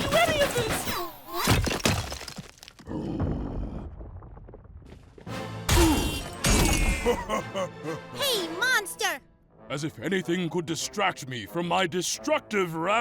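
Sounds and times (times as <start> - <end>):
cartoon soundtrack music: 5.3 - 13.0.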